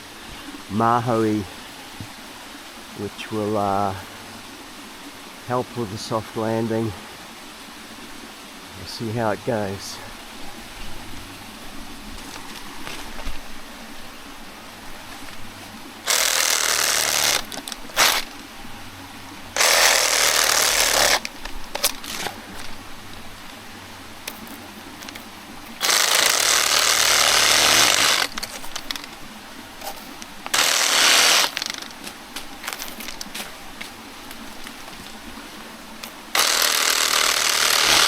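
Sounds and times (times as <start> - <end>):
reciprocating saw cutting: 16.0 - 18.3, 19.5 - 22.7, 24.3 - 29.1, 29.8 - 32.0, 36.3 - 38.0.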